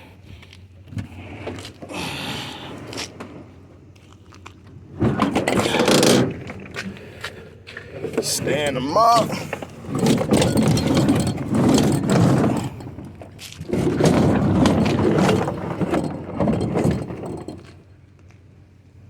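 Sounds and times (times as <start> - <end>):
metal scrap clattering and scraping: 5.0 - 6.8, 7.9 - 17.9.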